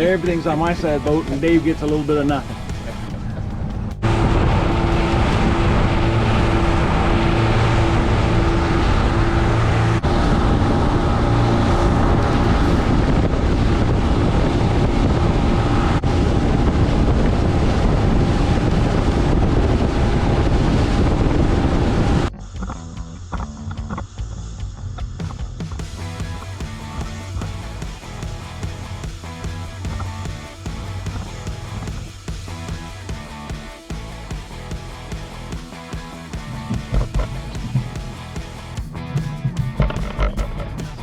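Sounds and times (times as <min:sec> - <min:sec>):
motorboat engine drone: 0:00.0 - 0:24.9, 0:25.8 - 0:41.0
wind buffeting microphone: 0:00.4 - 0:22.3.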